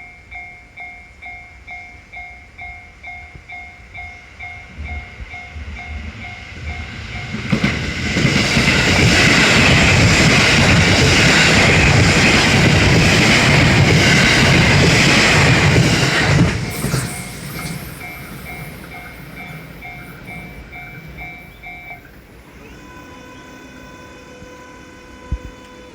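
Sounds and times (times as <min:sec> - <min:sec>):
train wheels rushing on rail: 0:02.6 - 0:25.9
level-crossing bell dinging: 0:13.4 - 0:23.8.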